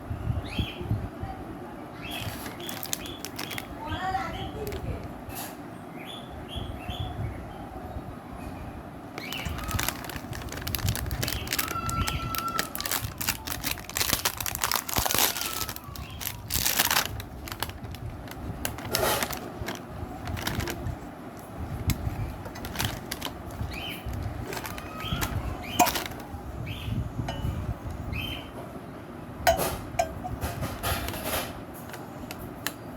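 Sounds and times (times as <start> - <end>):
handling noise rustling and clicks: 2.2 - 3.7, 9.2 - 26.3, 29.5 - 32.8.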